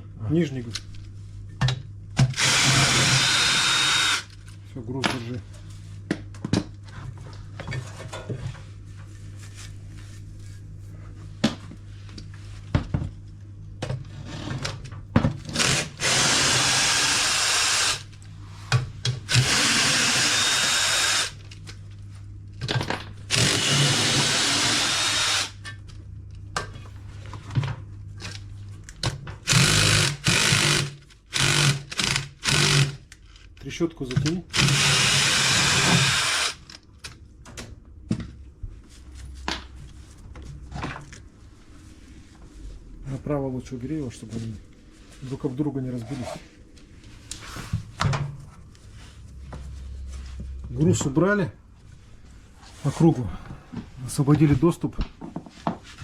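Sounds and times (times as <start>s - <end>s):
power drill running: 2.4s - 4.3s, 15.5s - 18.1s, 19.3s - 21.4s, 23.3s - 25.6s, 29.5s - 33.0s, 34.5s - 36.6s.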